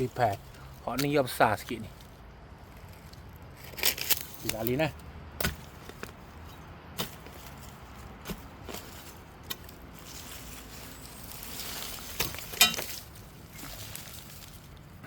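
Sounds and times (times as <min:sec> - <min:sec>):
rustling of plants: 0:00.0 - 0:15.0
sharp knocks and scrapes: 0:05.4 - 0:13.8.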